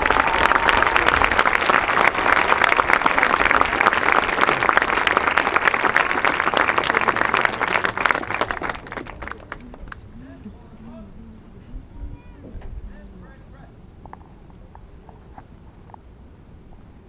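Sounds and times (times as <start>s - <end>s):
crowd applauding: 0.0s - 10.0s.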